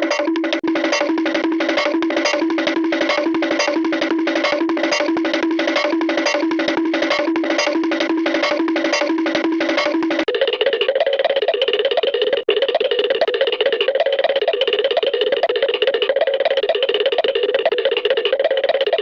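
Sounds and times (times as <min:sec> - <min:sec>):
higher-pitched music cue: 0:00.0 - 0:10.3
plucked-string riff: 0:00.0 - 0:10.3.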